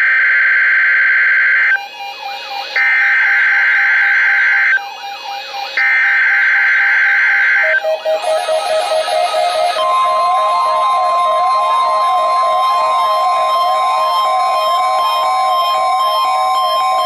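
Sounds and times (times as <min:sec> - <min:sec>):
warbling data tone: 0:07.6 - 0:17.0
music: 0:07.7 - 0:17.0.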